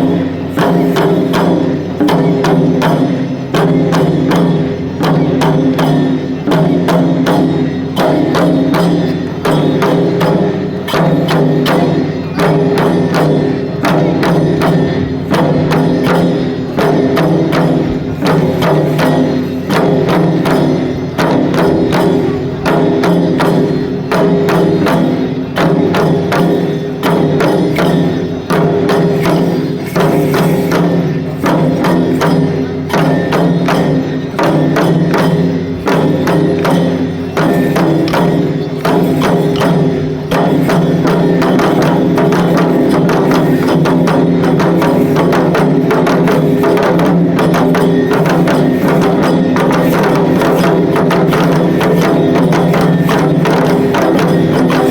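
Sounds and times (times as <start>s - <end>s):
steady ringing tone: 0.0s - 54.9s
taiko drum: 0.0s - 54.9s.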